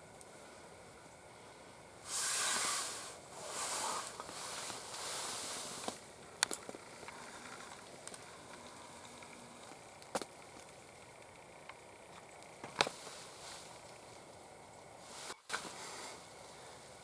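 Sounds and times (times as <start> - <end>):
rustling close to microphone: 2.0 - 9.4.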